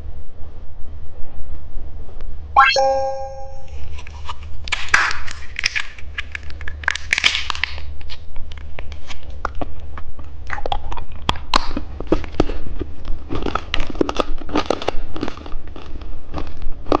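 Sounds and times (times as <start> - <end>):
hard candy crunching: 11.7 - 17.0.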